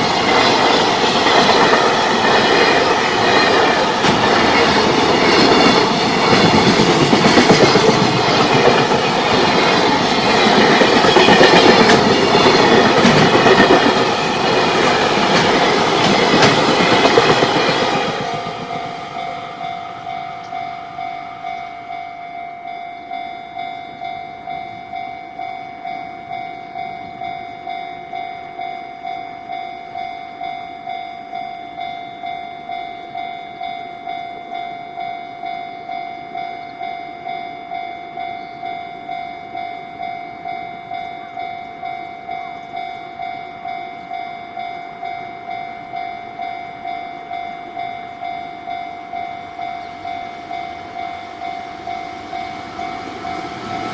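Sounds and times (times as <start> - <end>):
freight train rumbling past: 0.0 - 23.2, 35.0 - 53.9.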